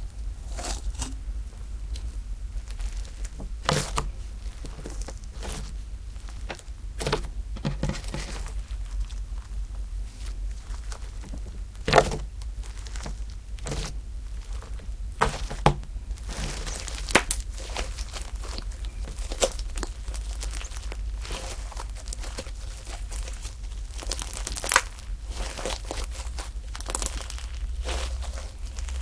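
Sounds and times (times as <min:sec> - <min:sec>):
low steady hum: 0:00.0 - 0:29.0
slime squished by hand: 0:10.2 - 0:29.0.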